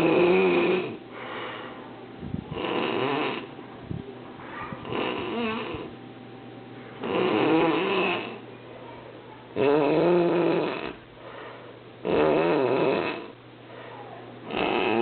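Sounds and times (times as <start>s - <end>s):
fluttering snores: 0.0s - 1.0s, 2.4s - 3.5s, 4.8s - 5.9s, 7.0s - 8.4s, 9.6s - 11.0s, 12.0s - 13.4s, 14.4s - 15.0s.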